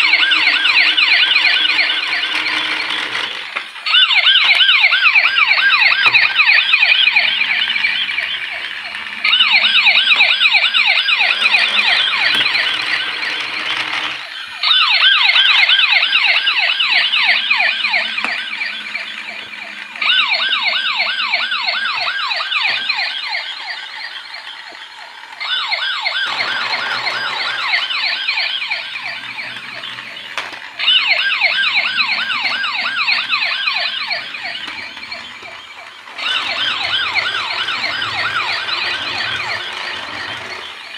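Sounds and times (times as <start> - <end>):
toy siren warbling: 0.0 - 40.9.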